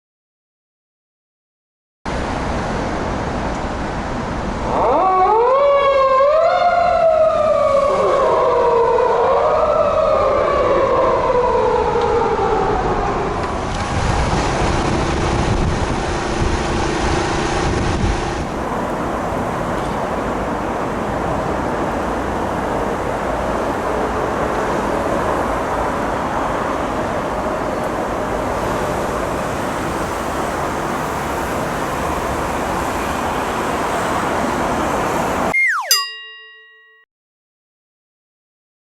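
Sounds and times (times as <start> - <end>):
police car siren wailing: 4.7 - 13.5, 35.6 - 36.0
steady road noise: 12.6 - 35.5.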